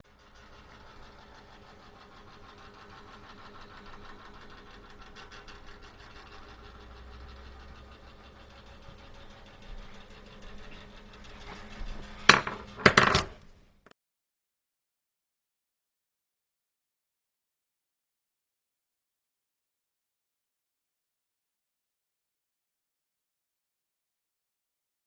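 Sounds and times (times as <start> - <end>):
oven clock mechanical noise: 0.0 - 13.8.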